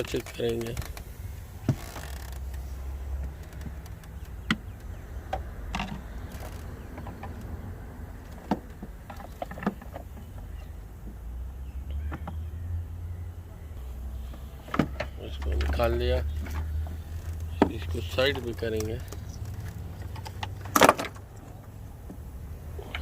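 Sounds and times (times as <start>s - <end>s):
hand tools clicking and knocking: 3.2s - 7.6s, 8.2s - 11.2s, 14.7s - 21.5s.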